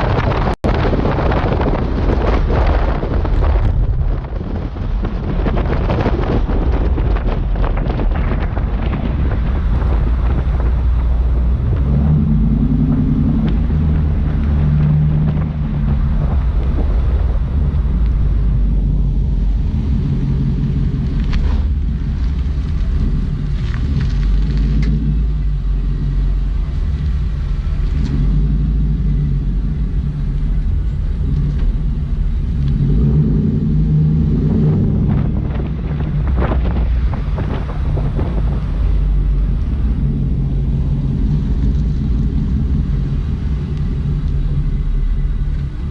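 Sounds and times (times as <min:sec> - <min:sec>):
heavy wind buffeting microphone: 0:00.0 - 0:45.9.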